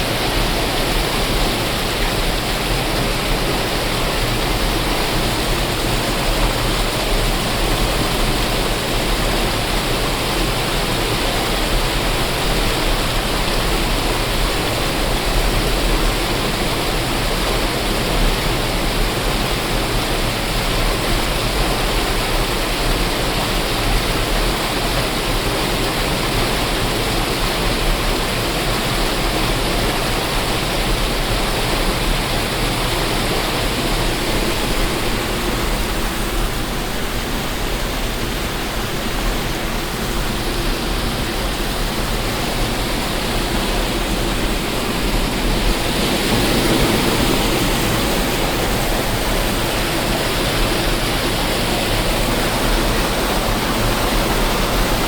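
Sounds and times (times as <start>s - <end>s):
waterfall rushing: 0.0s - 55.0s.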